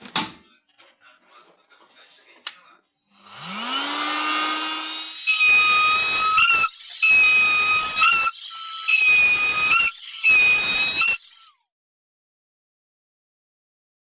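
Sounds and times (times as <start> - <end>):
drill squealing into steel: 3.3 - 11.7.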